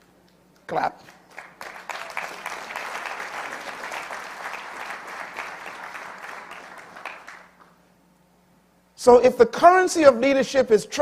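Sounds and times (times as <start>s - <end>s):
audience applauding: 1.2s - 7.8s.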